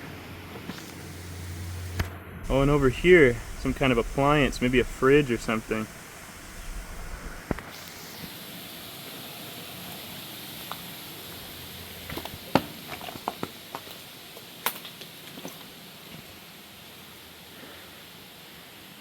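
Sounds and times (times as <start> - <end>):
steady hiss: 0.0 - 19.0.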